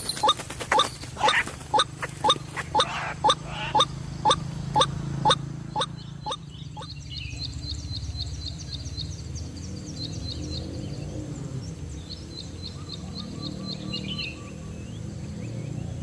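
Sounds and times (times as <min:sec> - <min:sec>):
bird calling sharp notes: 0:00.0 - 0:06.9
fast high chirping notes: 0:00.0 - 0:06.9.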